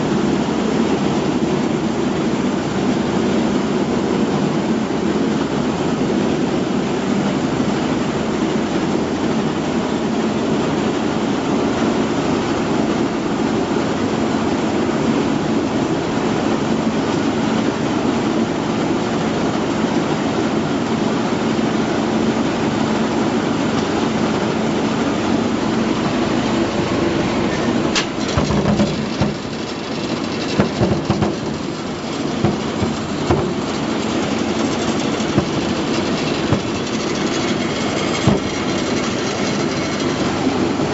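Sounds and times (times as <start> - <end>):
machine mechanical drone: 24.4 - 40.9
irregular knocking and clattering: 28.0 - 40.4.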